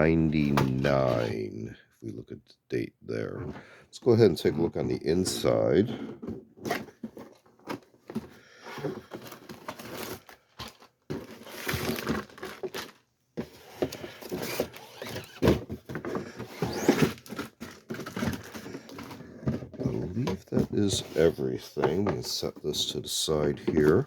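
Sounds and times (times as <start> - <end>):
paper and plastic rustling: 4.4 - 24.0.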